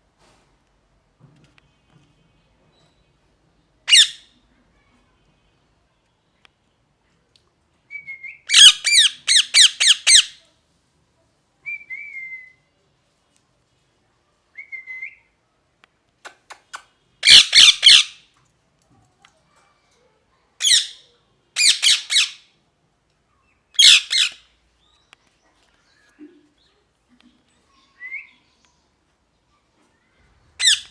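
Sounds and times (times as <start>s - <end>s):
parrot harsh screeches: 3.9s - 4.2s, 17.2s - 18.2s, 21.6s - 22.4s, 23.8s - 24.4s, 30.6s - 30.9s.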